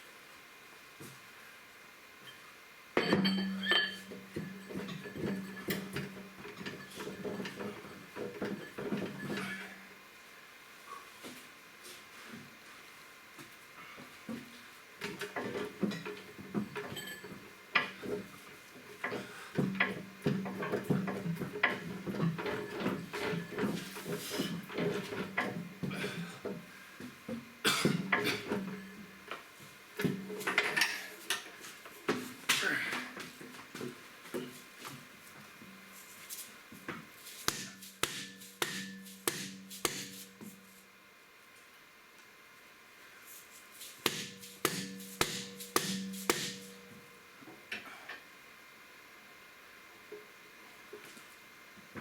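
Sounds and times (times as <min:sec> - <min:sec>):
metal tools clanking and scraping: 0:03.0 - 0:09.7, 0:15.2 - 0:18.3, 0:19.0 - 0:25.6, 0:30.3 - 0:31.6
hammer striking metal: 0:37.5 - 0:40.2, 0:44.1 - 0:46.8.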